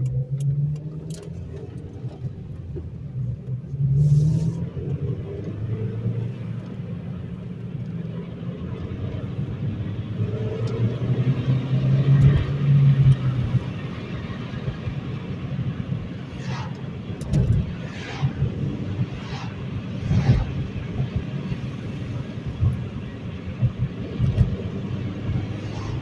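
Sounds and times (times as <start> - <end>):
car engine drone: 0.0 - 26.0
road noise: 0.0 - 26.0.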